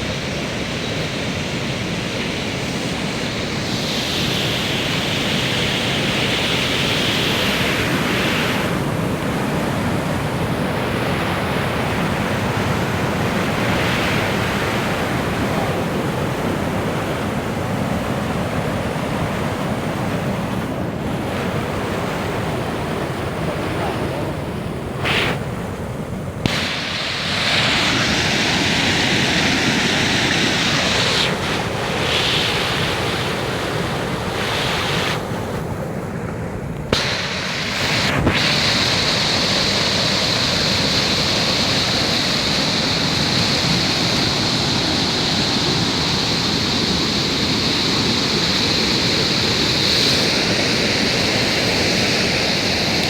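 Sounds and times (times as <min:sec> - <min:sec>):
river water rushing: 0:00.0 - 0:53.0.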